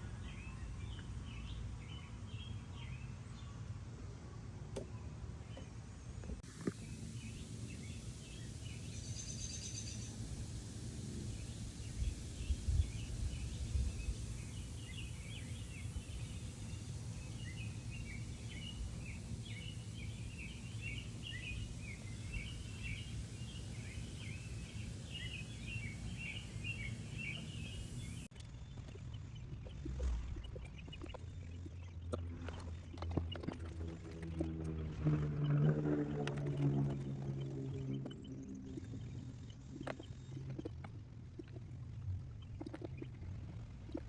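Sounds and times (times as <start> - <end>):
small birds chirping: 0.0 - 3.7, 4.8 - 44.0
low rumble: 28.5 - 44.0.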